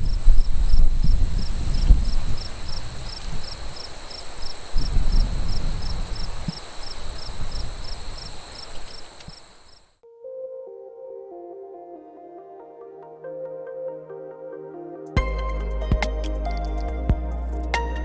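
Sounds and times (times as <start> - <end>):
insects droning and chirping: 0.0 - 10.0.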